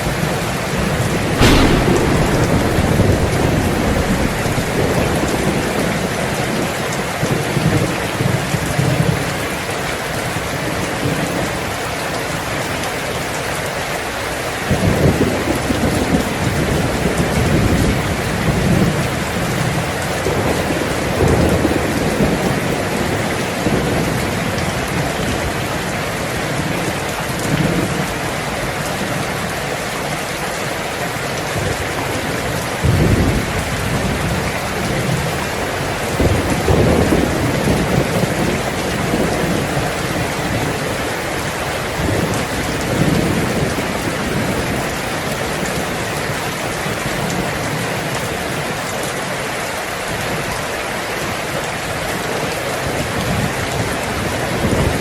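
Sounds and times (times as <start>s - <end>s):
thunder rolling: 0.0s - 9.2s, 32.1s - 45.8s
heavy rain on a tin roof: 0.0s - 55.0s.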